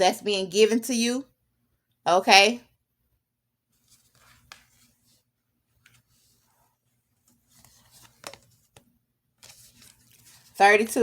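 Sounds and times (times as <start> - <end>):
cards rustling: 3.7 - 11.0.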